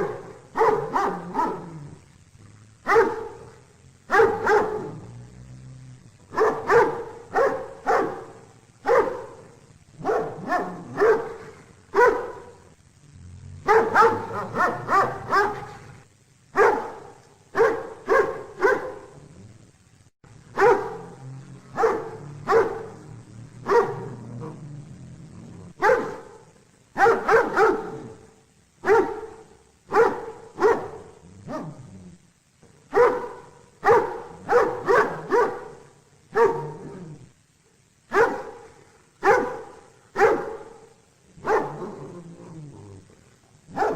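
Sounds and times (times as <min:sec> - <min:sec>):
dog barking: 0:00.0 - 0:02.0, 0:02.8 - 0:05.1, 0:06.3 - 0:12.7, 0:13.6 - 0:15.9, 0:16.5 - 0:19.2, 0:20.5 - 0:24.6, 0:25.7 - 0:31.8, 0:32.9 - 0:37.2, 0:38.1 - 0:42.1, 0:43.7 - 0:43.9.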